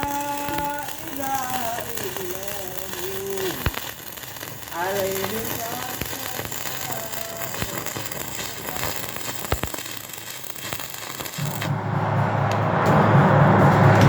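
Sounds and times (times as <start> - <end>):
arc welding crackle: 0.0 - 11.7
deep rushing noise: 11.4 - 14.0.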